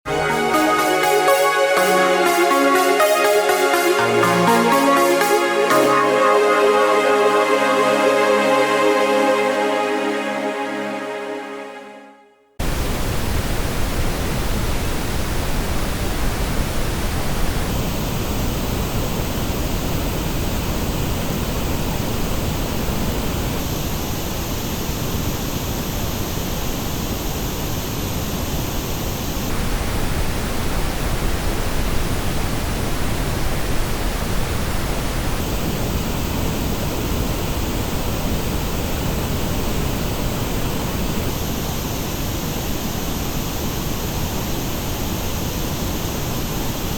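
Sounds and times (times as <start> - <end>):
pink noise test signal: 12.6 - 20.1, 21.1 - 46.9.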